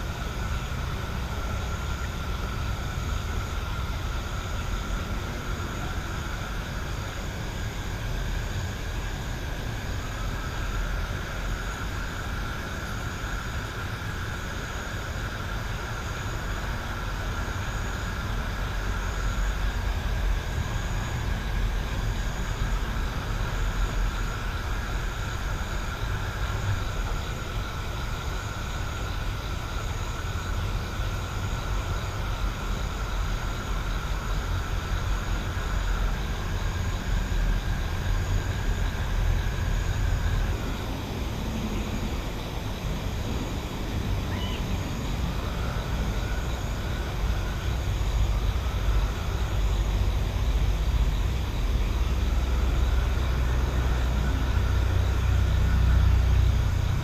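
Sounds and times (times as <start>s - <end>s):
high-pitched insect drone: 0.0s - 57.0s
faint pulsing chirp: 21.9s - 57.0s.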